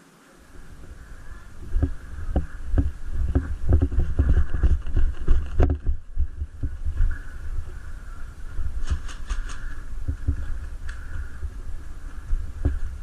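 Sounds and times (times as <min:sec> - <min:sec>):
camera thumps and rustling: 0:01.6 - 0:07.2, 0:08.8 - 0:11.4, 0:12.1 - 0:13.0.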